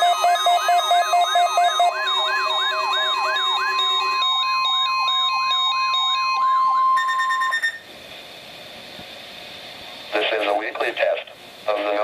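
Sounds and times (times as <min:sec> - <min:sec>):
beeping tones: 0:00.0 - 0:07.9
electronic alert siren sweeps: 0:00.0 - 0:07.9
steady alarm tone: 0:00.0 - 0:07.9.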